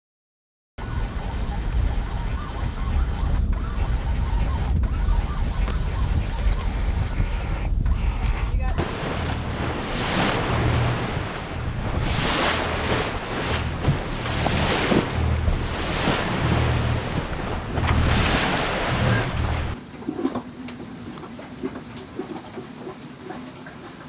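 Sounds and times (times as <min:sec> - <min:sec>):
wind buffeting microphone: 0:00.8 - 0:22.3
waves rushing: 0:08.1 - 0:19.8.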